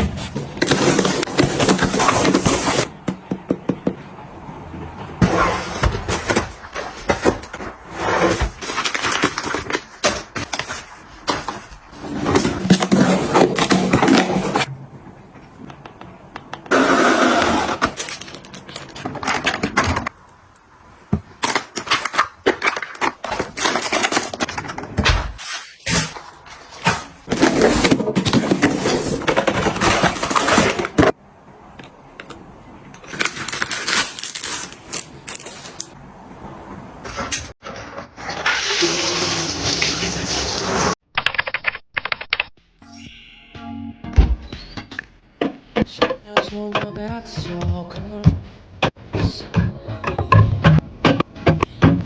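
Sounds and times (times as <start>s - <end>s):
packaging rustling: 5.9s - 14.7s, 17.7s - 20.1s, 21.4s - 31.2s, 33.0s - 36.0s.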